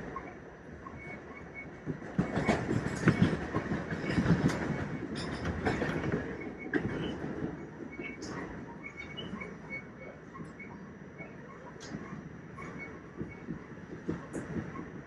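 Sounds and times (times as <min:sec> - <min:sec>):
train rumble: 0:00.0 - 0:15.0
train wheels clacking over rail joints: 0:01.8 - 0:08.4, 0:11.8 - 0:15.0.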